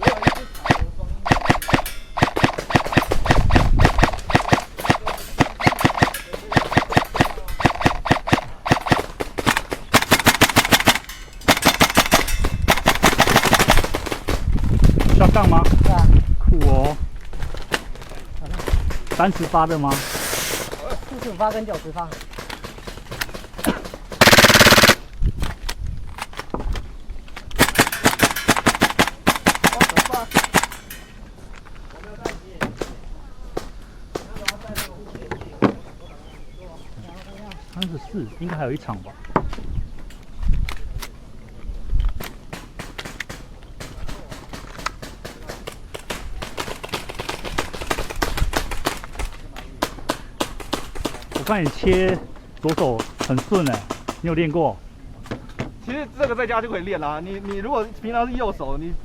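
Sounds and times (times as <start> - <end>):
airsoft guns firing: 0.0 - 15.8, 21.4 - 25.1, 27.6 - 31.0, 42.5 - 52.1.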